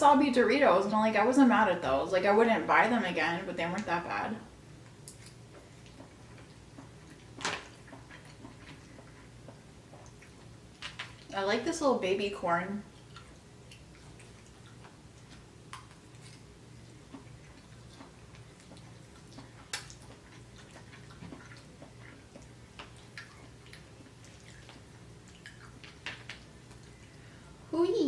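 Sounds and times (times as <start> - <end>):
faint low hum: 0.0 - 28.0
person chewing: 4.8 - 11.3, 12.9 - 27.4.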